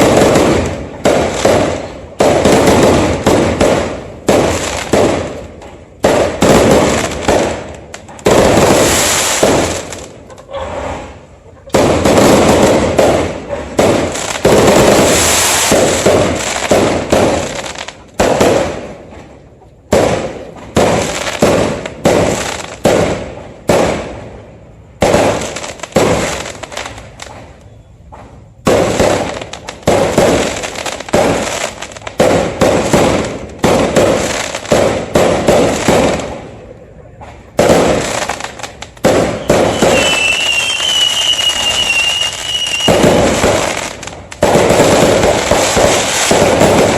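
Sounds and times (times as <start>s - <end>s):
fireworks bangs and crackling: 0.0s - 46.9s
wavering high whistle: 39.4s - 43.0s.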